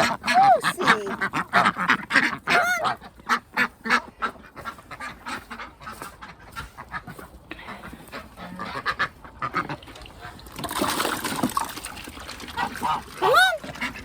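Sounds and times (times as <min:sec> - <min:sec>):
geese honking: 0:00.0 - 0:09.9
ducks calling: 0:00.0 - 0:10.4, 0:12.5 - 0:14.0.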